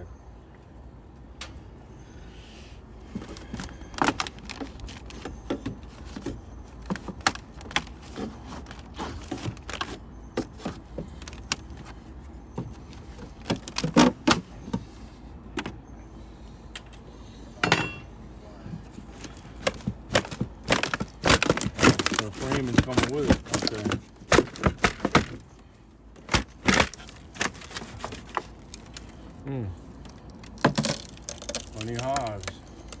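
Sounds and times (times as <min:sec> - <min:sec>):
sheet metal clinking and scraping: 0:17.6 - 0:18.1.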